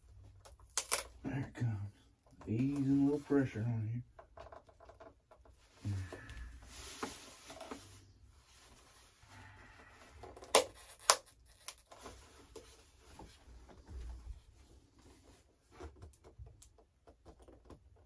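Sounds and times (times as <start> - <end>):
foam and plastic parts handled: 4.2 - 14.3.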